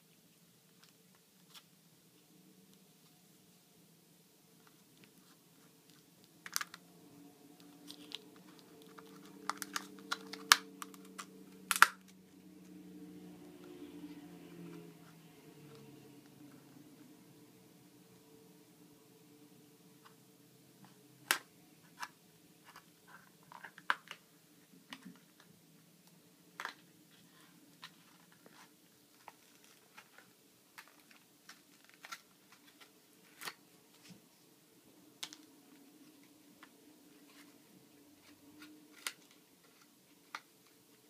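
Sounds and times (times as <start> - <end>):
faint steady hum: 0.0 - 41.0.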